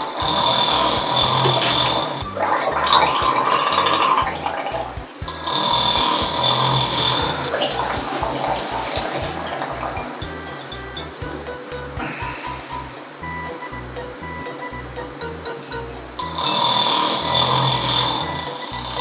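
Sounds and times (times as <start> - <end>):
loud snoring: 0.1 - 10.0, 16.2 - 19.0.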